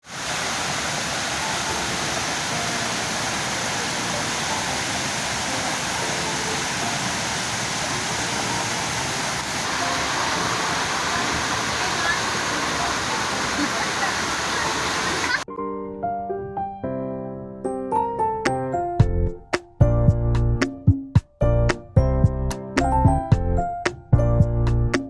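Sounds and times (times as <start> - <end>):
waterfall rushing: 0.0 - 15.5.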